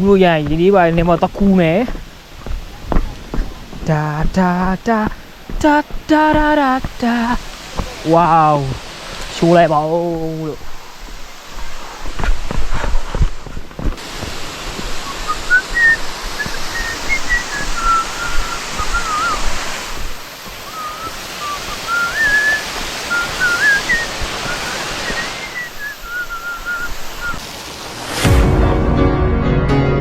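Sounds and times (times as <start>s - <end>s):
waterfall rushing: 0.0s - 28.9s
person whistling a tune: 15.0s - 19.5s, 20.6s - 27.4s.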